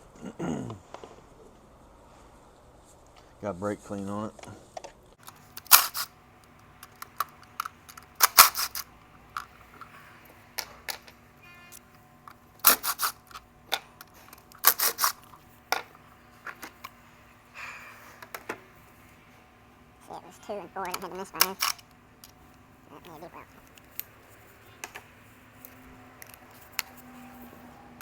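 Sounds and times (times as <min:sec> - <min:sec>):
hand tools clicking and clanking: 0:05.2 - 0:19.1, 0:20.5 - 0:27.6.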